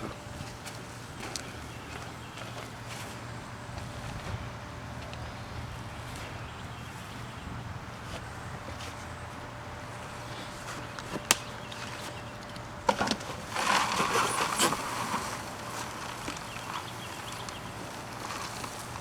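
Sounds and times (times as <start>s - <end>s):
soil rustling and scraping: 9.9s - 19.0s.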